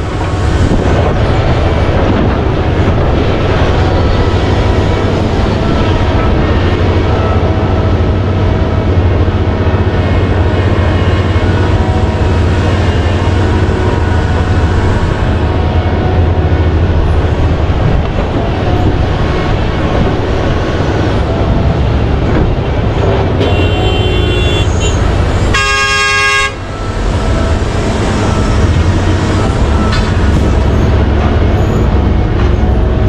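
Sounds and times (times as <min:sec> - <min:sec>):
diesel machinery rumbling: 0:00.0 - 0:33.0
horn: 0:23.4 - 0:26.6.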